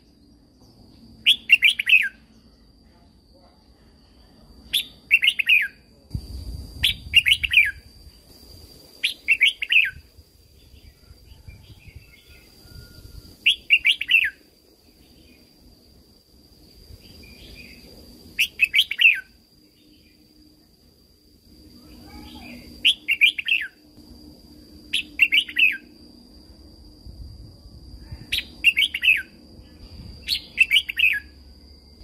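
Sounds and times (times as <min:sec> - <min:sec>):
bird singing warbled phrases: 0:01.2 - 0:02.2, 0:04.7 - 0:05.9, 0:06.8 - 0:07.8, 0:09.0 - 0:10.0, 0:13.5 - 0:14.4, 0:18.4 - 0:20.2, 0:21.8 - 0:23.8, 0:24.9 - 0:25.9, 0:28.3 - 0:29.4, 0:30.3 - 0:31.4
faint high-pitched tone: 0:09.6 - 0:13.4, 0:19.7 - 0:28.3.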